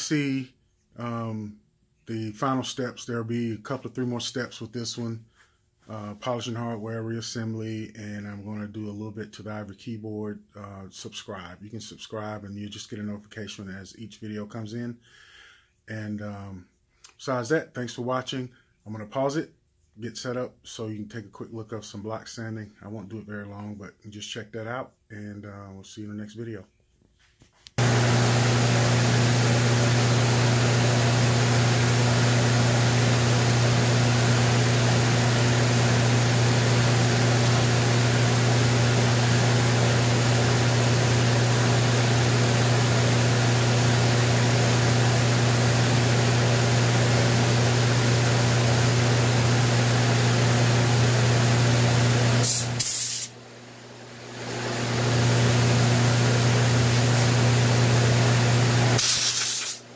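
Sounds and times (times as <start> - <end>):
electric machine humming: 27.8 - 59.9.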